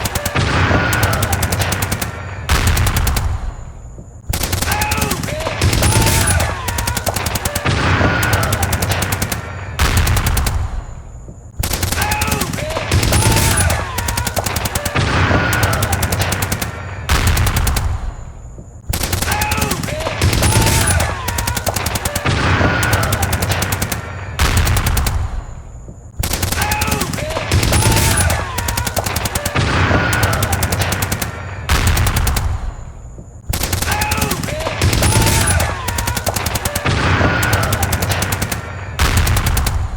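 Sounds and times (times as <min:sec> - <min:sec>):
people screaming: 0:00.0 - 0:02.2, 0:04.6 - 0:09.5, 0:12.0 - 0:16.8, 0:19.2 - 0:24.1, 0:26.5 - 0:31.4, 0:33.8 - 0:38.7
automatic gunfire: 0:00.0 - 0:03.7, 0:04.3 - 0:11.0, 0:11.6 - 0:18.3, 0:18.9 - 0:25.6, 0:26.2 - 0:32.9, 0:33.5 - 0:39.9.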